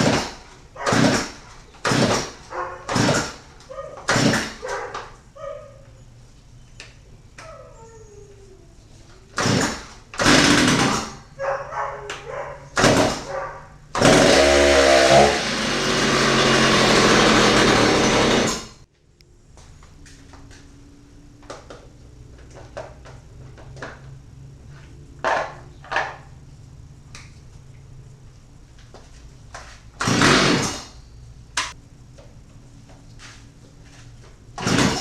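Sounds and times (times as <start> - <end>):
chainsaw pull starting: 0.0 - 3.5, 4.1 - 4.6, 9.4 - 11.2, 14.0 - 18.8, 30.0 - 31.0, 34.6 - 35.0
chainsaw engine running: 9.4 - 11.1, 14.0 - 18.8, 30.0 - 30.8, 34.6 - 35.0.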